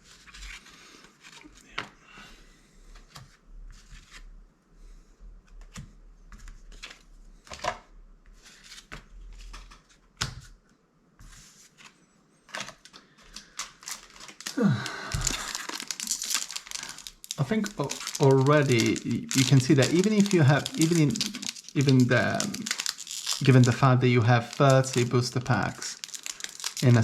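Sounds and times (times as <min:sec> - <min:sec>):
crinkly wrapper rustle: 0:12.5 - 0:27.0.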